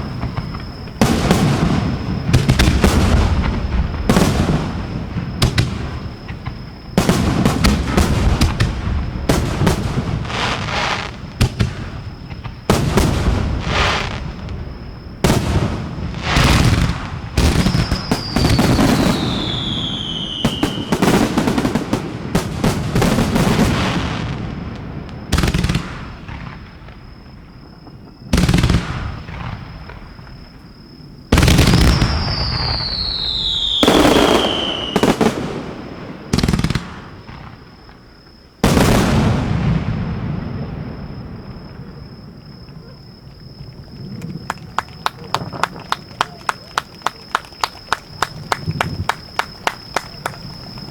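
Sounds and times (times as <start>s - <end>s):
fireworks bangs: 0.0s - 50.9s
firework whistle gliding down: 17.7s - 21.1s, 31.7s - 35.2s.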